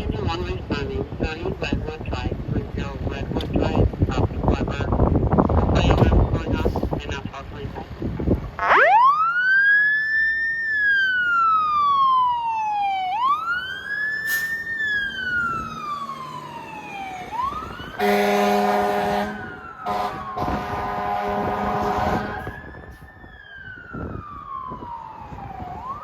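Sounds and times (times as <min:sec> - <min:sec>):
fire engine siren wailing: 0:08.5 - 0:26.0
air horn blast: 0:18.0 - 0:22.6.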